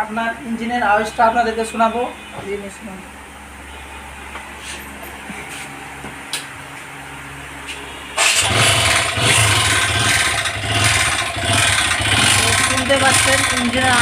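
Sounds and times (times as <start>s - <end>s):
abnormal engine noise: 7.1s - 14.0s
motorcycle engine running rough: 8.2s - 14.0s.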